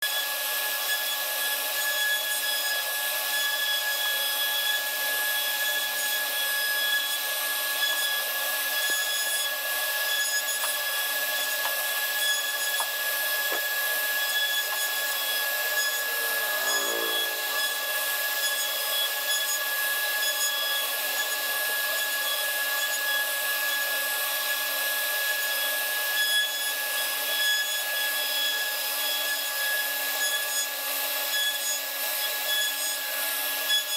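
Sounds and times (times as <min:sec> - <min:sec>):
router spindle whine: 0:00.1 - 0:26.1
bit rasping into wood: 0:08.8 - 0:23.1.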